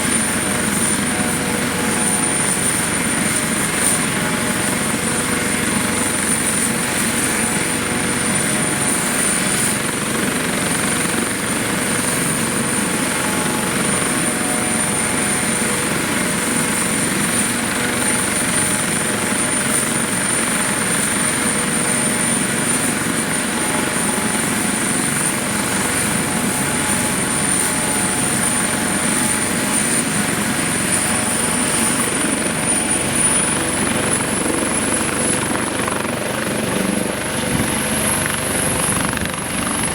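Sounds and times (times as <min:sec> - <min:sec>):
helicopter rotor noise: 0:00.0 - 0:39.9
helicopter turbine whine: 0:00.0 - 0:39.9.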